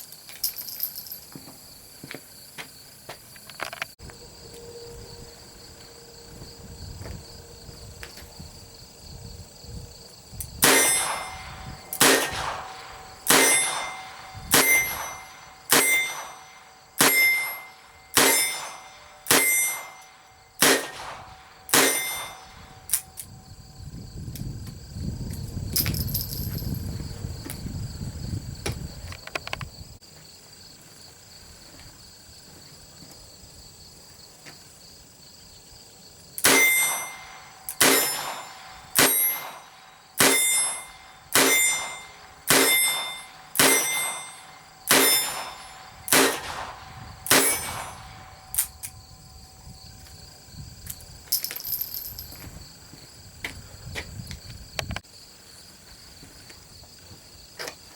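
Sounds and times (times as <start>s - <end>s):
insects chirping: 0.0s - 57.9s
revolver shots with ringing: 10.6s - 23.0s, 36.4s - 48.7s.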